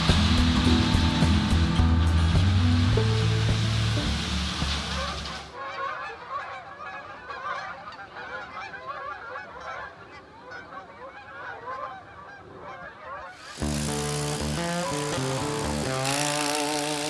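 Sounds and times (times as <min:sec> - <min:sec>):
background music: 0:00.0 - 0:05.5
geese honking: 0:03.2 - 0:16.0.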